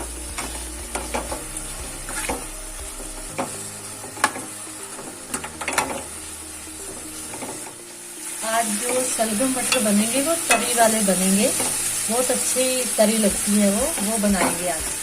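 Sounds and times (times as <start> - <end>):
food sizzling in oil: 0.0 - 15.0
spoon scraping a pan: 8.8 - 12.1.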